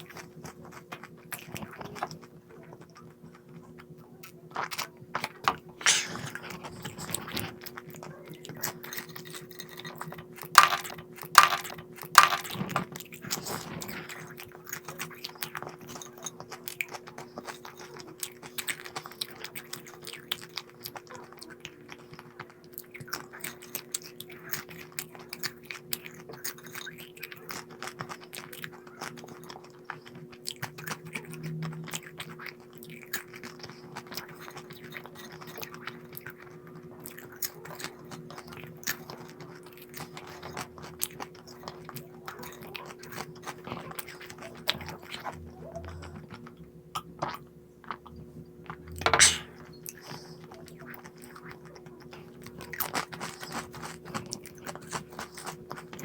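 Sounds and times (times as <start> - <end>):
steady low hum: 44.9 - 50.4
person chewing crunchy snack: 52.4 - 56.0.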